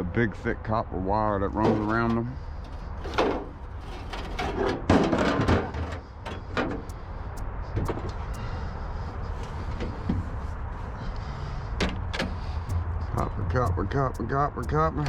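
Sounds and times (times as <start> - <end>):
low rumble: 12.4 - 15.0.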